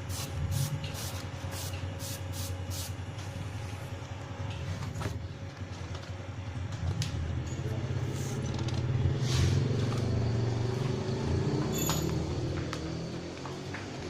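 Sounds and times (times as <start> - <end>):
vehicle engine running: 0.0 - 14.0
metal clink: 11.7 - 12.2.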